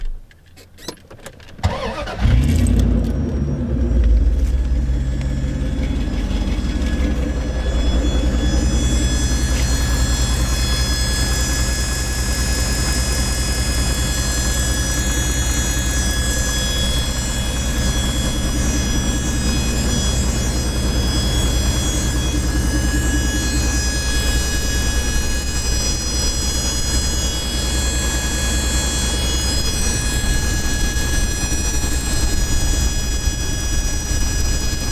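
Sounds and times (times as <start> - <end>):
truck engine starting and idling: 0.9 - 23.8
high-pitched squeal: 1.6 - 12.6.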